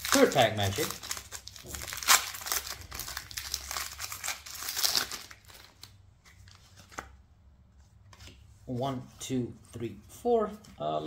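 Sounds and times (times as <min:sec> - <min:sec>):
foil wrapper crinkling and tearing: 0:00.0 - 0:06.0.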